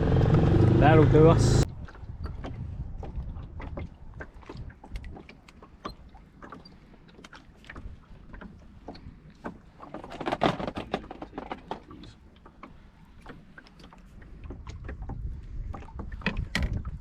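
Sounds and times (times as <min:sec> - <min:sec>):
wind rumble on microphone: 0:00.0 - 0:05.3, 0:14.2 - 0:17.0
gear knocking and clattering in boat: 0:01.7 - 0:17.0.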